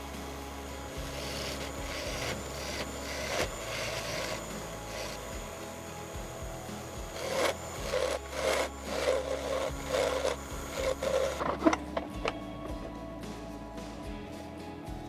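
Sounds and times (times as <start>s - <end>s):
sanding strokes on wood: 0.0s - 11.5s.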